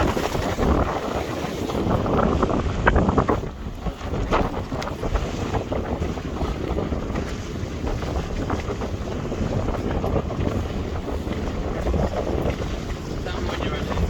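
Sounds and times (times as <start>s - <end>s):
water and waves rushing: 0.0s - 14.0s
wind buffeting microphone: 0.0s - 14.0s.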